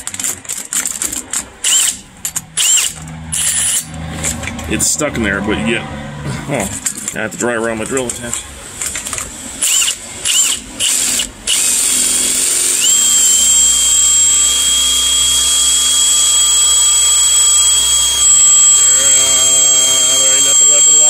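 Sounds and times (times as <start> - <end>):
electric drill boring into metal: 0.8 - 4.0, 9.6 - 21.0.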